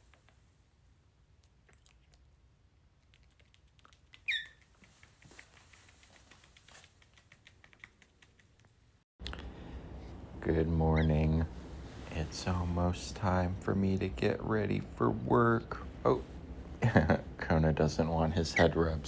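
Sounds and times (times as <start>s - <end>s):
bird chirp: 4.2s - 4.6s.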